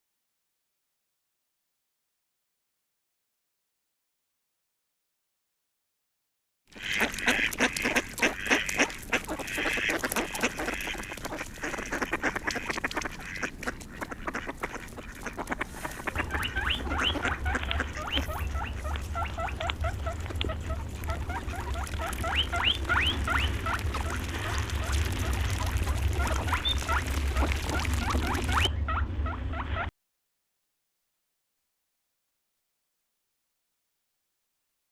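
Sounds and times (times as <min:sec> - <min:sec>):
many birds calling: 0:06.8 - 0:29.9
steady low hum: 0:08.0 - 0:29.9.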